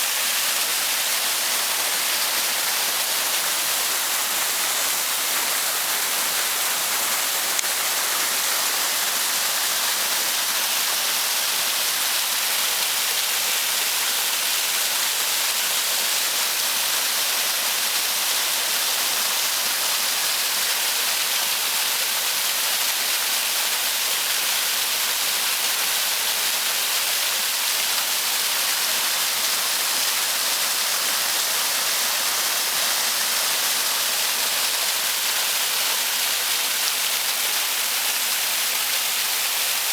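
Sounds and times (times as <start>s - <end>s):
waterfall rushing: 0.0s - 12.4s, 26.9s - 39.9s.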